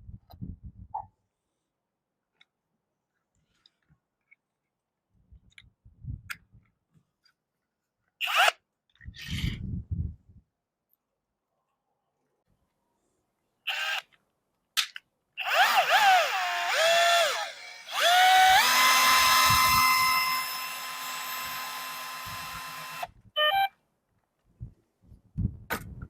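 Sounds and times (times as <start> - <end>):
cordless drill motor whining: 13.7 - 14.0, 15.4 - 23.1.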